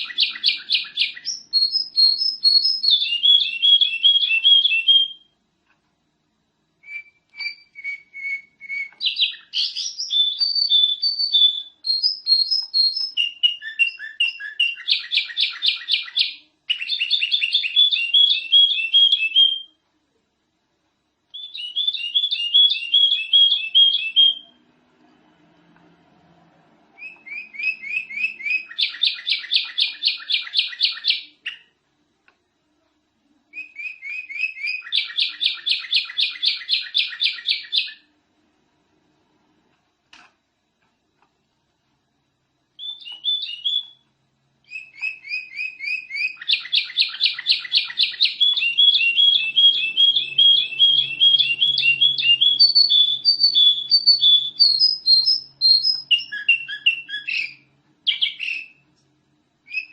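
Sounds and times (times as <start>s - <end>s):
canary singing trills: 0.0s - 5.4s, 6.8s - 19.8s, 21.3s - 24.7s, 27.0s - 31.8s, 33.5s - 38.1s, 42.8s - 44.0s, 44.6s - 58.8s, 59.6s - 59.9s.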